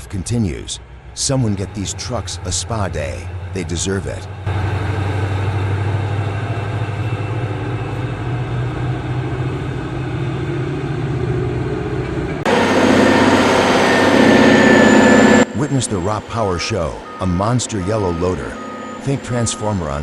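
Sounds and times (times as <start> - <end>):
heavy diesel engines running: 0.0 - 20.0
thin high whine: 12.5 - 20.0.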